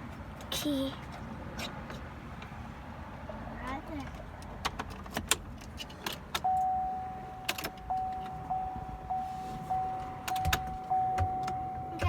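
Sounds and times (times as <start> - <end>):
electronic warning chime: 6.5 - 12.0.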